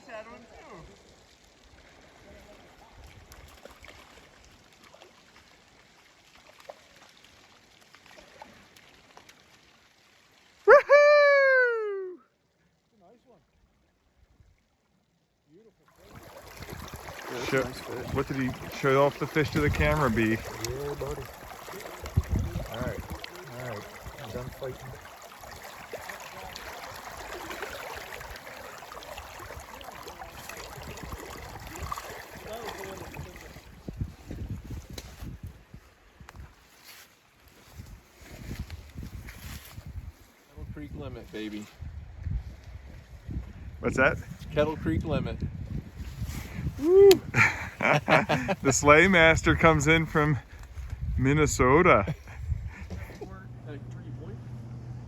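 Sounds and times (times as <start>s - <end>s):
creek water running over rocks: 0.0s - 11.4s, 14.9s - 41.9s, 45.7s - 53.4s
water plinks: 15.9s - 35.0s, 47.0s - 53.7s.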